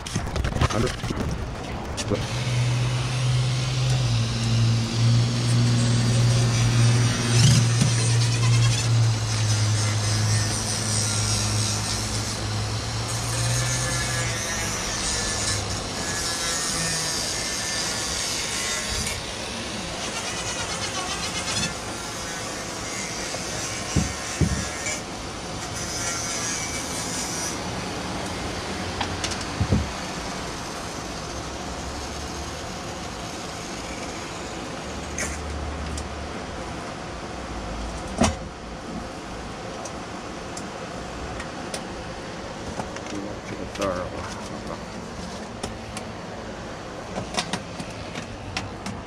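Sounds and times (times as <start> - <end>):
rasping scraping work noise: 0.0 - 28.4, 29.0 - 35.7
steady background hum: 0.0 - 49.0
sharp knocks: 23.9 - 24.7.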